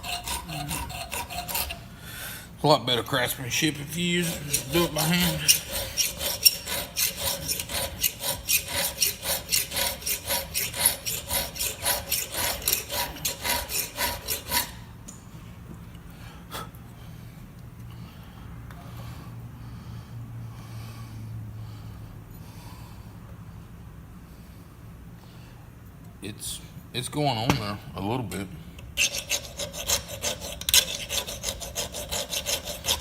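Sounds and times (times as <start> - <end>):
metal file rasping: 0.0 - 2.0, 3.2 - 14.9, 29.0 - 33.0.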